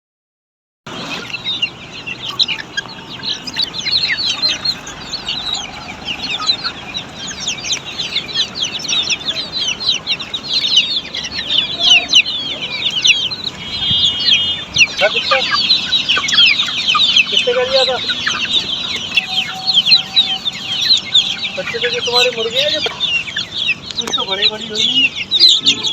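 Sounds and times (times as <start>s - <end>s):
chicks peeping: 0.9s - 25.9s.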